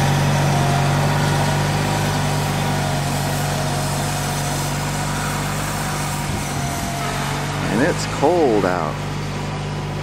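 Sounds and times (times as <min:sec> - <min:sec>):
snowblower engine running: 0:00.0 - 0:10.0.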